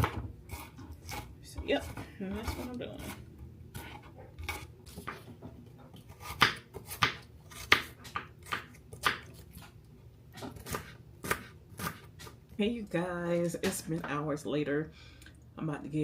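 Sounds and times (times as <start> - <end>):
knife chopping celery on board: 0.0 - 5.2, 6.0 - 9.7, 10.4 - 12.4.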